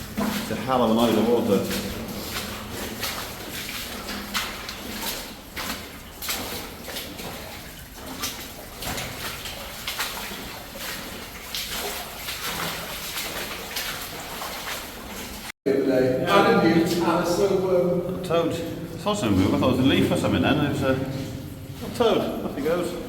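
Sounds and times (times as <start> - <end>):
footsteps splashing through water: 0.0 - 15.6, 16.3 - 23.0.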